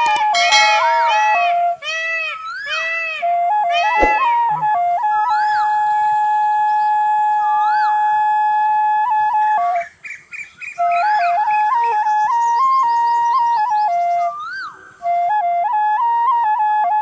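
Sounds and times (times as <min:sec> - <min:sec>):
flute ringtone melody: 0:00.0 - 0:01.8, 0:02.7 - 0:05.6
rising-and-falling chirps: 0:03.7 - 0:04.7.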